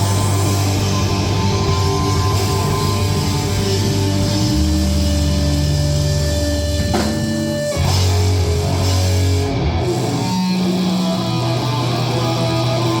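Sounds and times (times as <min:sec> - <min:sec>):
distorted electric guitar: 0:00.0 - 0:13.0
punk rock band playing: 0:00.0 - 0:13.0.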